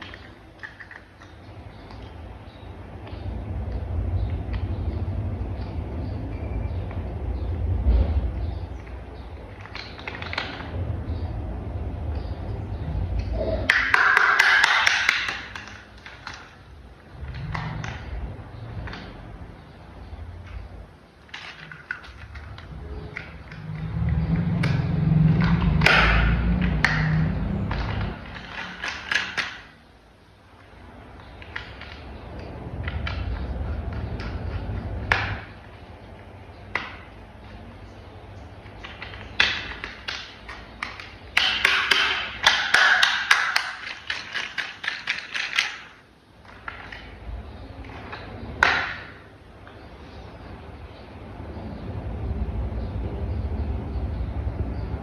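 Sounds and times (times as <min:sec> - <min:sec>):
plastic toy parts clicking: 0:24.6 - 0:29.7, 0:38.6 - 0:47.2.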